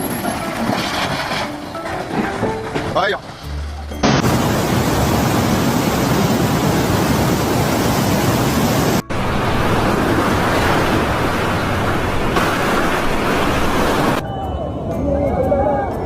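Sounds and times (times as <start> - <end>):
loud steady rushing noise: 4.0 - 14.2.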